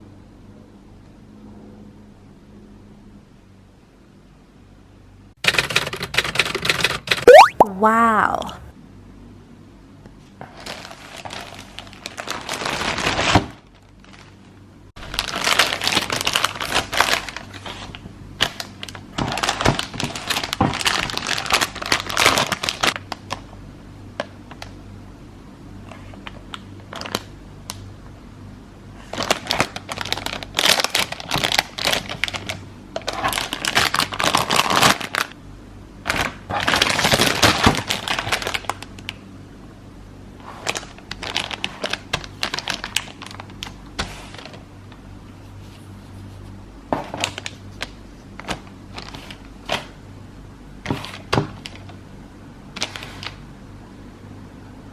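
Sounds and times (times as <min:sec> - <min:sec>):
plastic packaging crinkling: 0:10.5 - 0:23.4, 0:29.2 - 0:35.3, 0:36.1 - 0:39.2, 0:40.6 - 0:44.6, 0:47.1 - 0:49.9.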